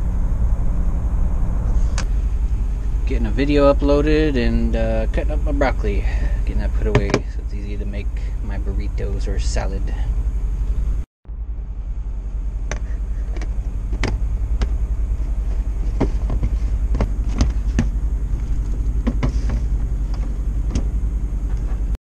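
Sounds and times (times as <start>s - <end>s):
low drone: 0.0s - 22.0s.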